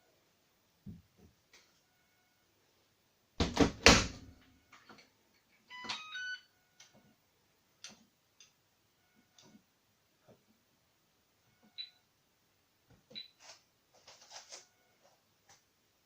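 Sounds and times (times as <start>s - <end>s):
dryer door knocking shut: 3.4s - 4.2s.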